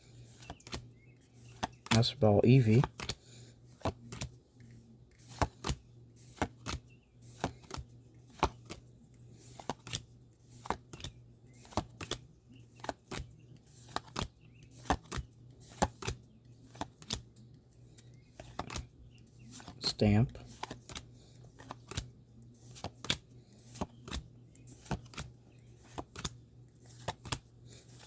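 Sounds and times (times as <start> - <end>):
trading cards snapping: 0.4 - 0.9, 1.5 - 2.0, 2.7 - 3.2, 3.8 - 6.8, 7.4 - 8.8, 9.6 - 10.0, 10.6 - 17.2, 18.0 - 18.9, 19.5 - 22.1, 22.7 - 28.0.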